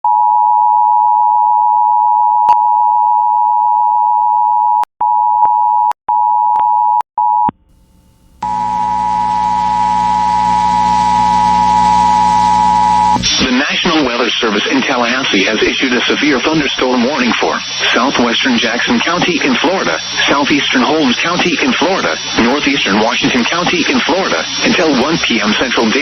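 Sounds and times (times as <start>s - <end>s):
hiss and hum: 7.7s - 13.5s.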